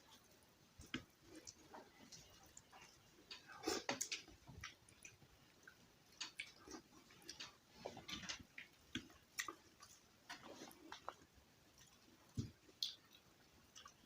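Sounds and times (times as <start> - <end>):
wet chewing: 0.8 - 14.0.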